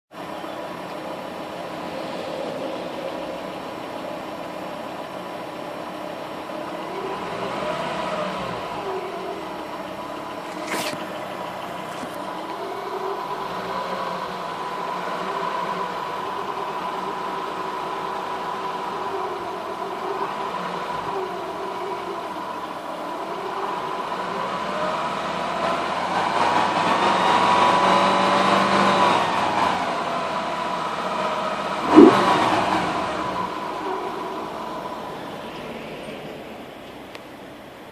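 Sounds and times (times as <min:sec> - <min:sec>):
car engine with high whine: 0:00.2 - 0:37.9
sharp loud thump: 0:31.8 - 0:32.3.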